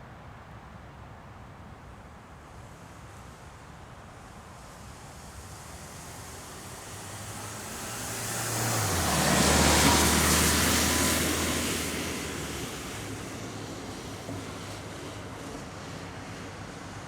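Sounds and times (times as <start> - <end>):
vehicle passing by: 5.2 - 15.9.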